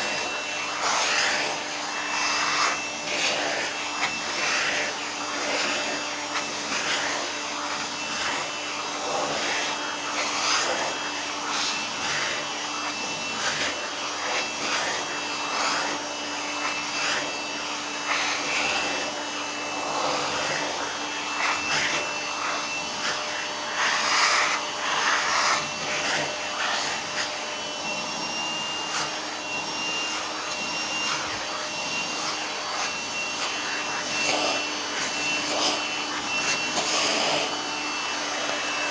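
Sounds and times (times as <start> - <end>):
vacuum cleaner running: 0.0 - 38.9.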